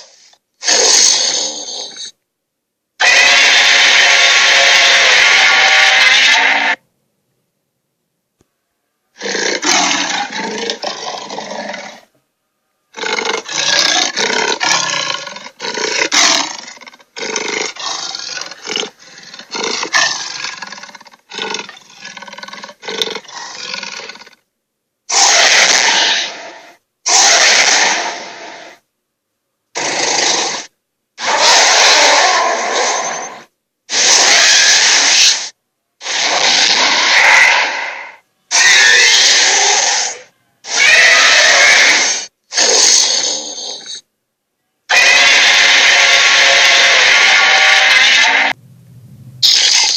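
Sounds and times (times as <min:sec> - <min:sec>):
dragon roars and growls: 0:03.0 - 0:06.8, 0:09.2 - 0:12.0, 0:12.9 - 0:24.4, 0:25.1 - 0:28.8, 0:29.8 - 0:44.0, 0:44.9 - 0:48.6.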